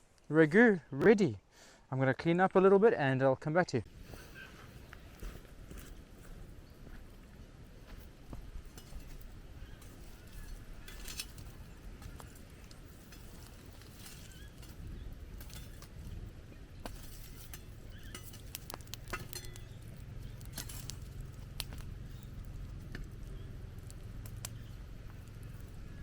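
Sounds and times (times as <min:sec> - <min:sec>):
low steady rumble: 0:04.6 - 0:26.0.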